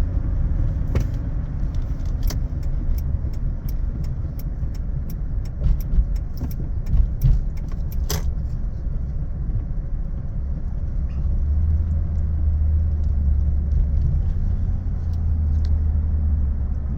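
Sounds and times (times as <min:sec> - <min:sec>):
motor vehicle rumble: 0:00.0 - 0:16.9
light clicks and rattles: 0:00.9 - 0:08.7.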